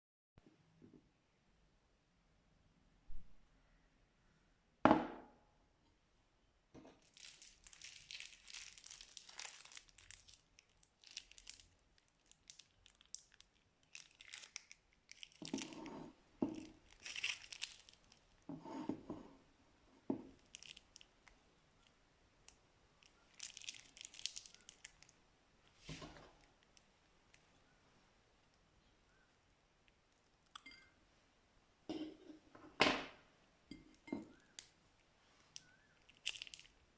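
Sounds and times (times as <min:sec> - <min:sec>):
plastic bags crinkling and tearing: 0:07.0 - 0:18.5, 0:20.3 - 0:21.4, 0:23.0 - 0:25.2, 0:35.4 - 0:36.9.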